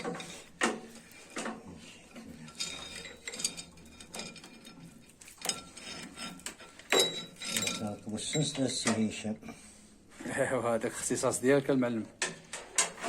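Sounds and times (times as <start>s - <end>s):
metal tools clinking and knocking: 0.0s - 9.1s.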